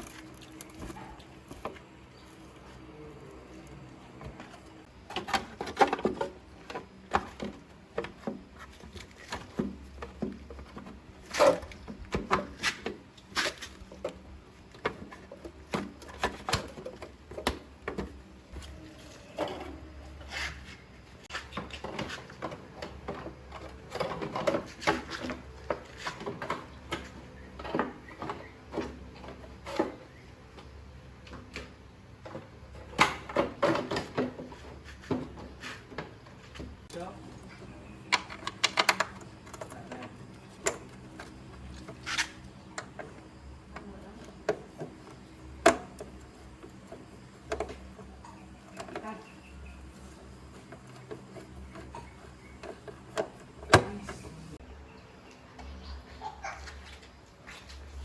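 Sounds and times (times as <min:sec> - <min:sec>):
rubbing: 0:44.6 - 0:54.6.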